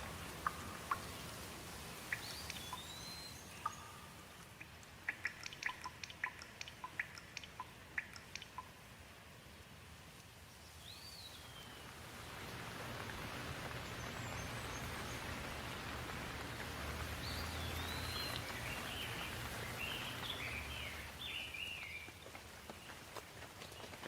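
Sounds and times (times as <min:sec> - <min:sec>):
sharp drip ticks: 0:00.0 - 0:10.4, 0:11.3 - 0:24.0
steady rain: 0:00.0 - 0:24.0
bird chirping: 0:02.0 - 0:08.8, 0:10.6 - 0:12.0, 0:17.2 - 0:22.2.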